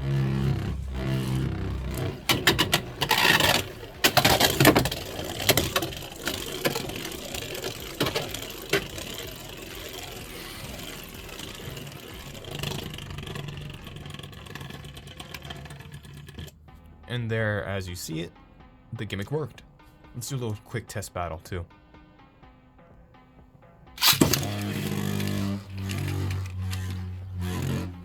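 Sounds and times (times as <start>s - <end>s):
spinning top whirring: 0.0s - 16.6s, 24.0s - 28.0s
spinning top clicking and rattling: 2.0s - 16.5s, 24.0s - 28.0s.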